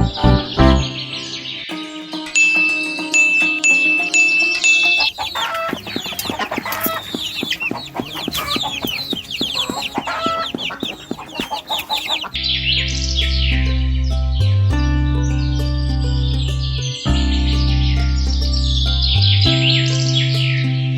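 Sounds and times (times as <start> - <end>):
chickens clucking: 0.0 - 12.5
background music: 0.0 - 20.9.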